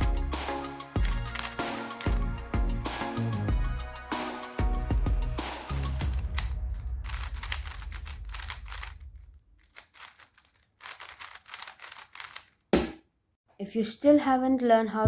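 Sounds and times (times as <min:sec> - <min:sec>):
puzzle cube plastic clicks: 0:01.0 - 0:02.2, 0:06.0 - 0:12.7.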